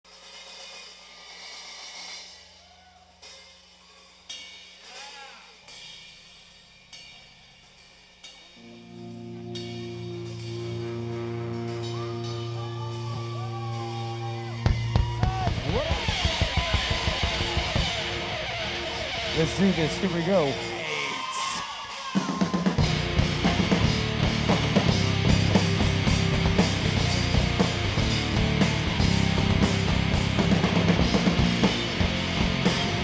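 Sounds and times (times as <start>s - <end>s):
drum kit fast loud beat: 0.1s - 33.0s
held low chord: 8.6s - 15.8s.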